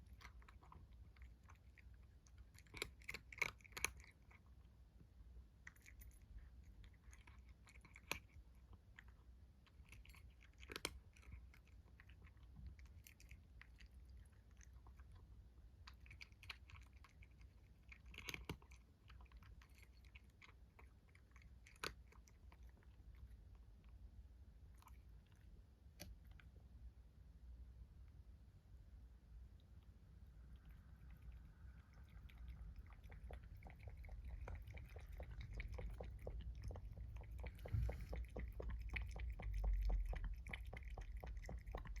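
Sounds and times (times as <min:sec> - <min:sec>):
kitten chewing food: 0:00.0 - 0:27.2, 0:27.8 - 0:42.0.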